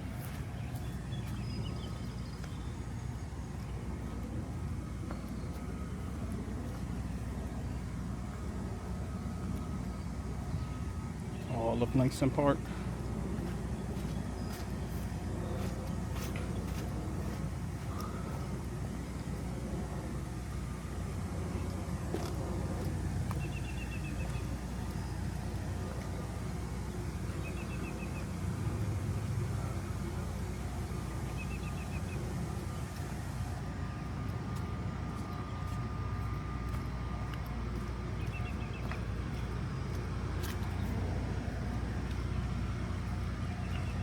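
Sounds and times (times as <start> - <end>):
low outdoor rumble: 0.0 - 44.0
bird chirping: 0.2 - 4.2, 27.0 - 28.4, 31.1 - 32.3, 37.7 - 41.0, 43.0 - 44.0.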